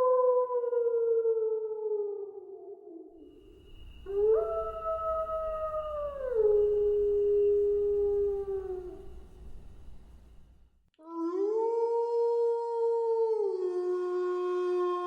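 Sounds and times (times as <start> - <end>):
wolf howling: 3.3 - 10.2.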